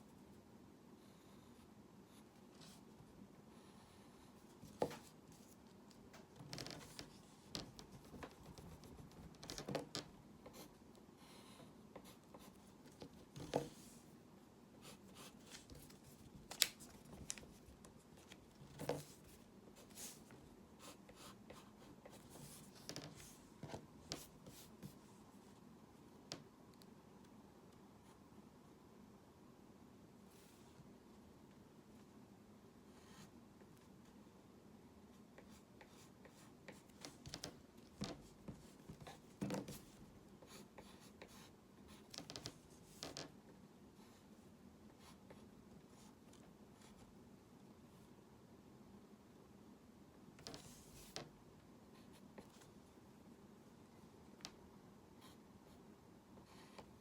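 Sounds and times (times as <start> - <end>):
low background hiss: 0.0 - 57.0
pen scratching and tapping: 6.4 - 10.6.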